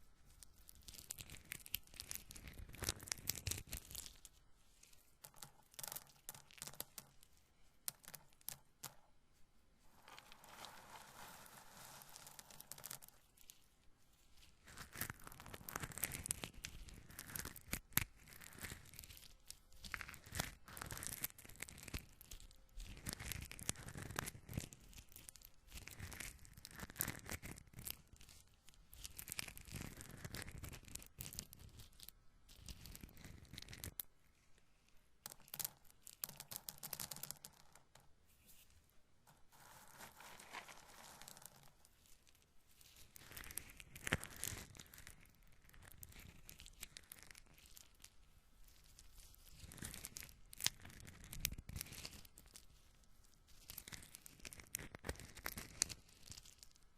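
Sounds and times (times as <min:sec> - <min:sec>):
corn kernels rustling: 0:10.0 - 0:13.1, 0:39.3 - 0:41.8.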